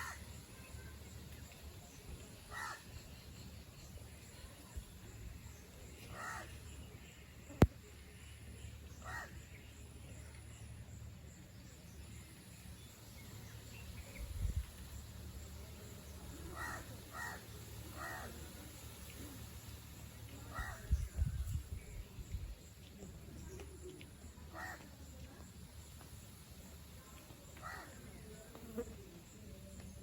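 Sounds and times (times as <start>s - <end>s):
birds calling: 8.7s - 9.5s.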